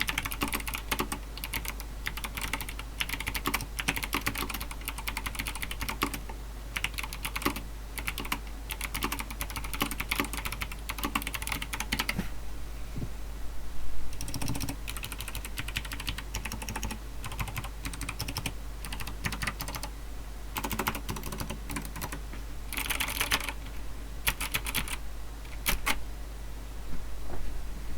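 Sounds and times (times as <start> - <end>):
mechanical keyboard typing: 0.0 - 6.2, 6.8 - 12.2, 14.2 - 19.9, 20.6 - 23.6, 24.2 - 26.0.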